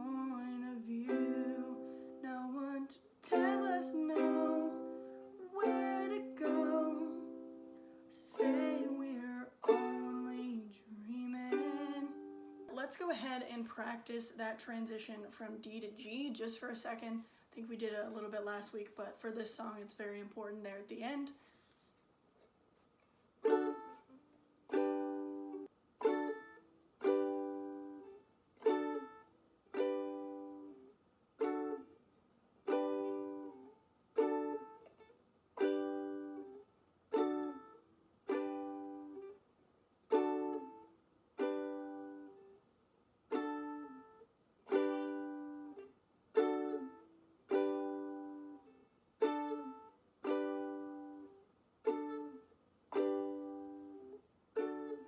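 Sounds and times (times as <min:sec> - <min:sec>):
ukulele strumming chords: 0:00.0 - 0:12.8, 0:23.4 - 0:32.0, 0:32.6 - 0:39.4, 0:40.1 - 0:42.6, 0:43.3 - 0:55.0.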